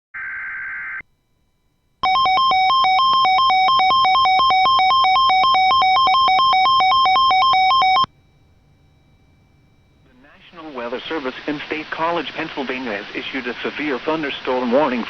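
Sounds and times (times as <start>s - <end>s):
warbling two-tone alert signal: 2.0s - 8.1s.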